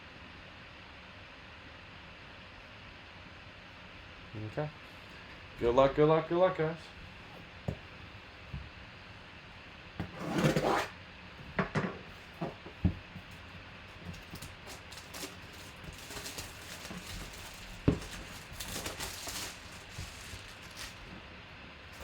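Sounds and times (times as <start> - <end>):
packaging rustling: 13.2 - 21.3.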